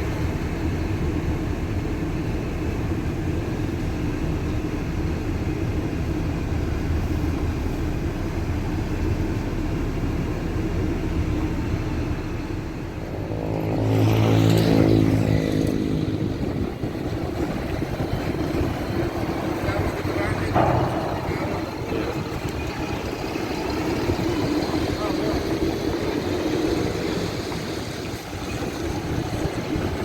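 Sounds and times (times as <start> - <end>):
vehicle engine rumble: 0.0 - 30.0
vehicle passing close: 12.8 - 30.0.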